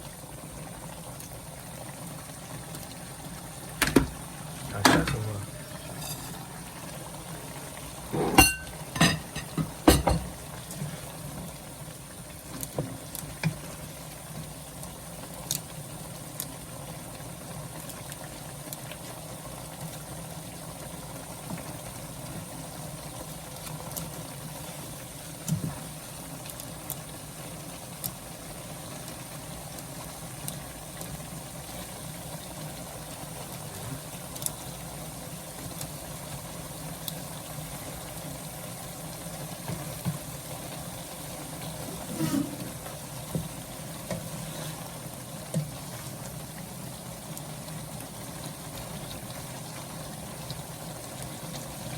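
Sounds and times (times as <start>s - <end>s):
broth bubbling: 1.5s - 13.1s, 40.9s - 45.4s
utensil knocking against pan: 3.8s - 4.1s, 8.2s - 10.3s.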